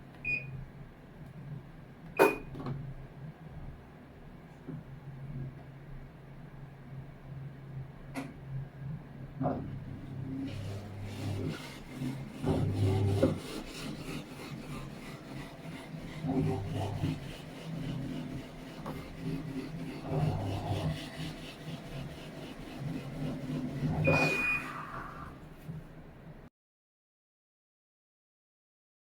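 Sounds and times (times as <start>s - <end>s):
washing machine agitating: 9.6s - 25.9s
short high beep: 24.0s - 24.8s.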